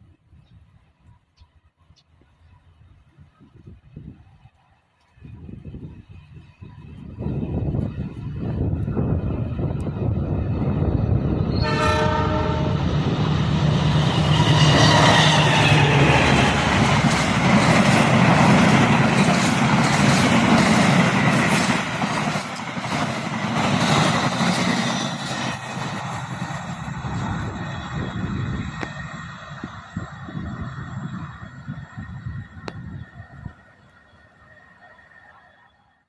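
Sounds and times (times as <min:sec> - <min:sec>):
train rumbling past: 0:02.3 - 0:36.0
train horn blast: 0:11.5 - 0:13.0, 0:14.0 - 0:16.8.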